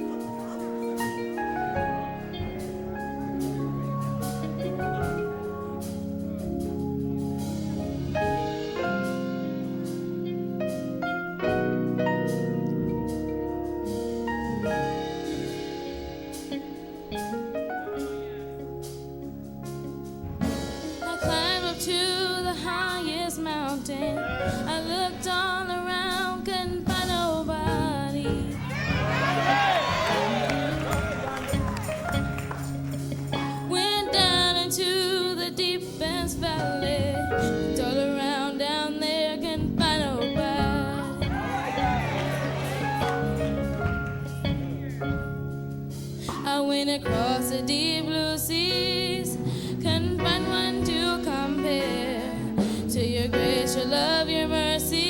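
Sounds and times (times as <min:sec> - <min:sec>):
bass line: 0:00.0 - 0:55.0
keyboard chords: 0:00.0 - 0:55.0
woman singing gospel: 0:21.0 - 0:30.8, 0:33.5 - 0:43.6, 0:46.3 - 0:55.0.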